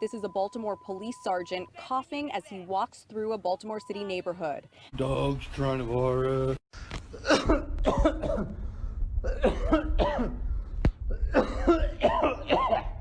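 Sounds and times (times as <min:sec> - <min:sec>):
man coughing: 0:07.1 - 0:08.6, 0:09.2 - 0:10.4, 0:11.1 - 0:13.0
low rumble: 0:07.6 - 0:12.0.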